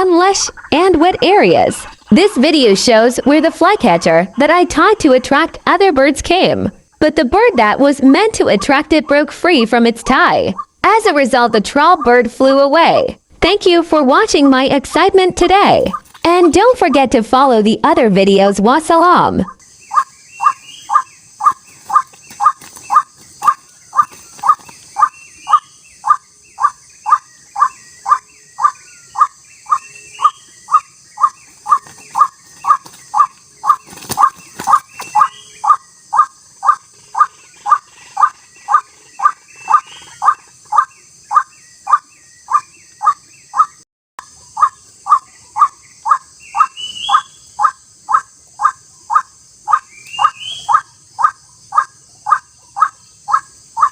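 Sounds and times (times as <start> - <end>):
waterhen calling kwak: 0.0 - 13.0, 14.1 - 53.9
high insect buzz: 14.1 - 16.9, 18.9 - 53.9.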